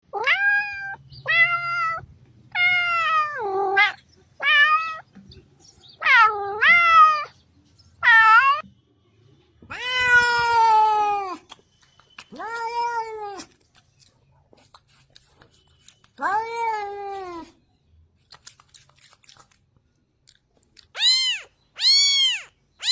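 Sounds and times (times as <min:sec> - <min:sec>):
cat meowing: 0:00.1 - 0:05.1, 0:06.0 - 0:07.4, 0:08.0 - 0:08.6, 0:09.6 - 0:11.5, 0:12.3 - 0:13.6, 0:16.2 - 0:17.6, 0:20.8 - 0:22.9.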